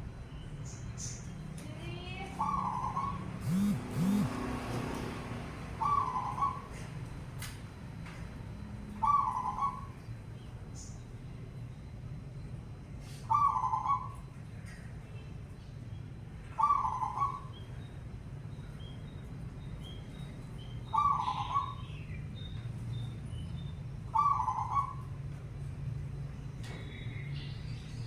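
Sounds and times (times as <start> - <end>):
small birds chirping: 0.0 - 4.4, 5.7 - 28.0
dove cooing: 2.4 - 4.4, 5.8 - 6.8, 9.0 - 9.9, 13.3 - 14.2, 16.6 - 17.5, 24.1 - 25.1.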